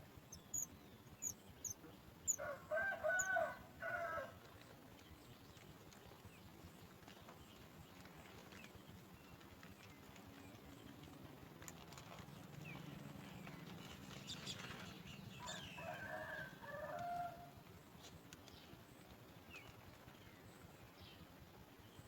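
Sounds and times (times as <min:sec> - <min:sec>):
rooster crowing: 0:02.3 - 0:04.4, 0:15.4 - 0:17.5.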